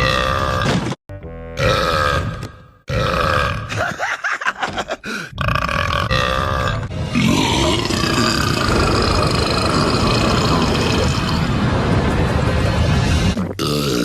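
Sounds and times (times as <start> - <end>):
cartoon characters belching: 1.6 - 3.8, 5.3 - 11.3.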